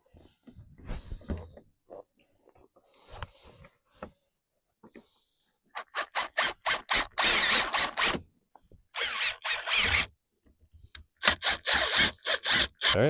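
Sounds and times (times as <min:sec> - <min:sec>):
screwdriver driving screws: 0:05.8 - 0:08.2, 0:09.0 - 0:10.1, 0:11.2 - 0:13.0.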